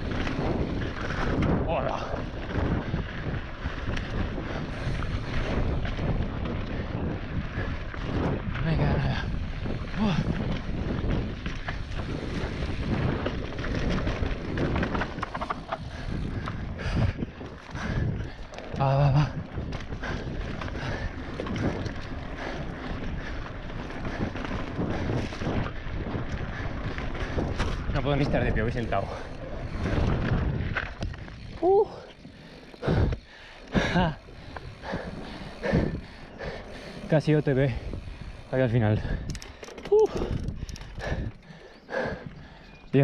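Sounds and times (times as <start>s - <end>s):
bike rattling: 0.0s - 43.0s
wind buffeting microphone: 0.0s - 43.0s.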